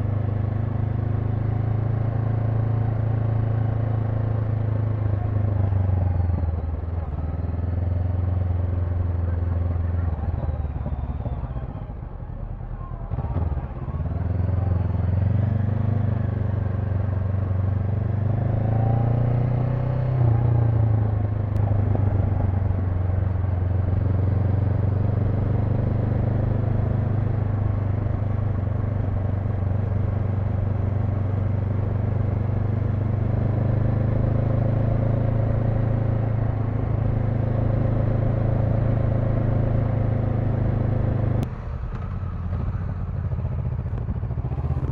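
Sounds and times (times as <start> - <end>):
motorcycle engine revving: 13.1 - 44.9.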